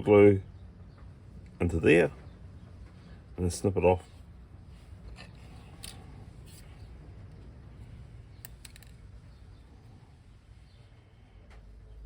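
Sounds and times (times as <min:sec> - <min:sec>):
low steady hum: 0:00.0 - 0:12.0
clicks of tools and plastic parts: 0:05.1 - 0:06.6, 0:08.4 - 0:09.0.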